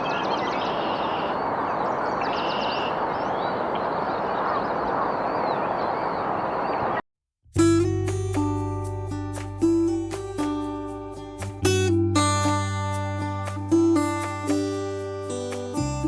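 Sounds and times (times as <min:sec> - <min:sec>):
small birds chirping: 0:00.0 - 0:07.0
strummed guitar music: 0:07.6 - 0:16.0.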